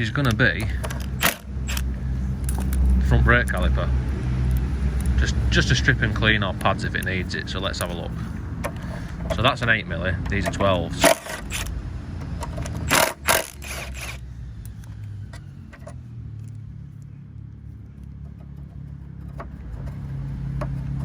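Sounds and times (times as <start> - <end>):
low rumble: 0.0 - 21.0
metal hand tools clinking: 0.6 - 9.6, 10.3 - 14.8.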